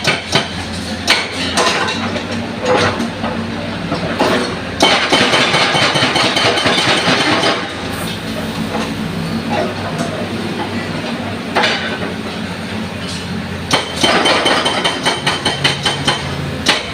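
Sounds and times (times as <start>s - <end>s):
hydraulic breaker hammering: 0.0s - 3.1s, 3.9s - 7.9s, 13.6s - 16.9s
diesel engine running: 6.4s - 16.9s.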